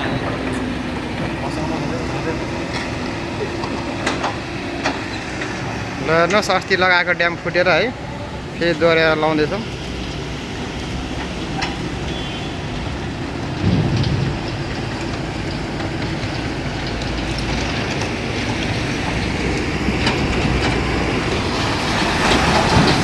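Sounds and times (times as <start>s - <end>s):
excavator diesel engine and hydraulics: 0.0s - 23.0s
river water rushing: 18.0s - 23.0s.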